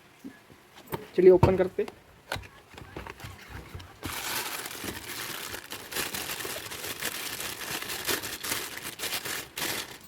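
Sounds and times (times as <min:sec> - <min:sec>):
packaging crinkling: 0:02.4 - 0:10.0.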